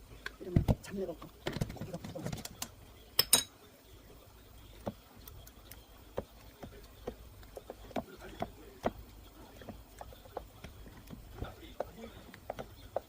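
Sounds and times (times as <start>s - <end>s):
kitchen utensils clicking: 2.1s - 3.5s.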